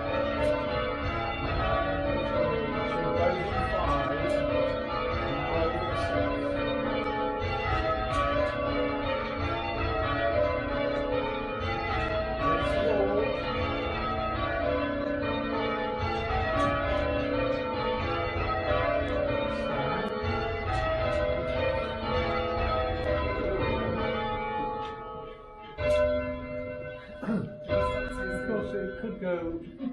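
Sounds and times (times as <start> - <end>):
church bells change ringing: 0.0 - 29.9.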